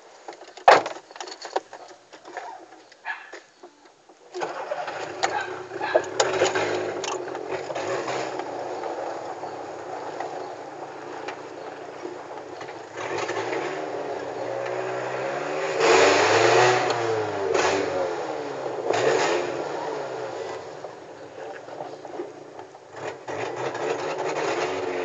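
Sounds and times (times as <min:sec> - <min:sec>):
car engine and exhaust revving: 0:04.5 - 0:25.0.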